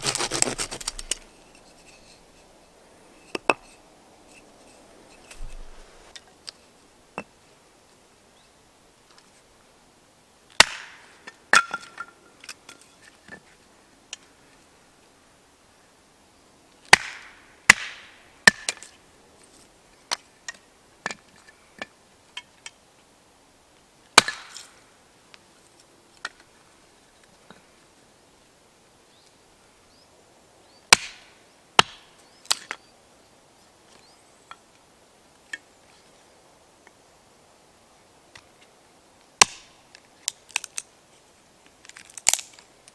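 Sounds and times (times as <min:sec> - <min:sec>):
firewood being chopped: 0:00.0 - 0:02.5, 0:03.2 - 0:06.1, 0:10.6 - 0:11.7, 0:16.9 - 0:18.8, 0:24.2 - 0:24.6, 0:30.9 - 0:32.0, 0:39.4 - 0:39.7.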